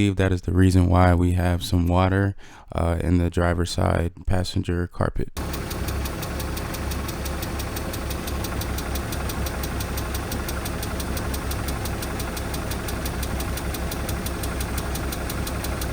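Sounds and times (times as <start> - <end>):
car engine idling: 5.4 - 15.9
fast even ticking: 5.4 - 15.9.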